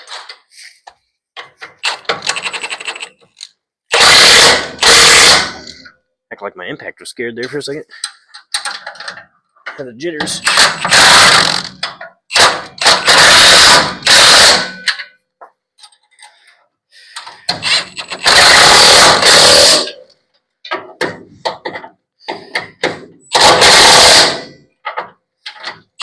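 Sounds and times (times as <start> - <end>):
impact wrench bursts: 3.9 - 5.8, 10.3 - 15.1, 17.2 - 20.0, 21.0 - 24.6.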